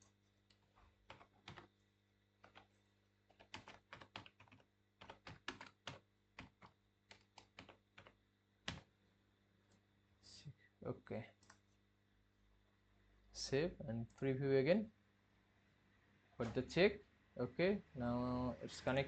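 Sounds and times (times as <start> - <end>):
typing on computer keyboard: 0.5 - 1.7, 2.4 - 2.7, 3.3 - 8.9.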